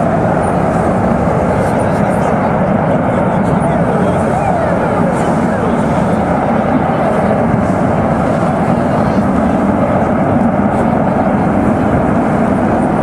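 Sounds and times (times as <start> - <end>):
burning gas roaring: 0.0 - 13.0.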